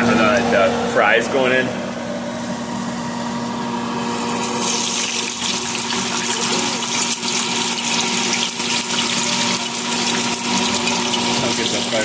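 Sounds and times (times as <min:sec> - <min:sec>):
steady hum: 0:00.0 - 0:12.0
fries sizzling in hot oil: 0:04.2 - 0:12.0.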